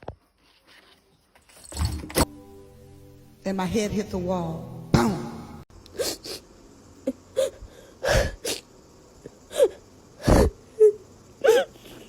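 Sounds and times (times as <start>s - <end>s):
person sneezing: 6.0s - 6.4s, 9.5s - 12.0s.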